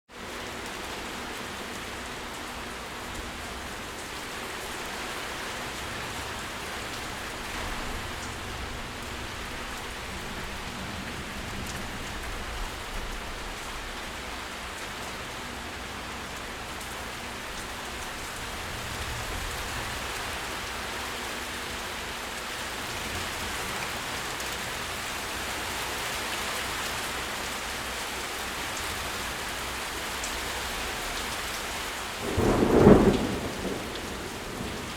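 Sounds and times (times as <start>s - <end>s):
heavy rain pattering: 0.2s - 34.9s.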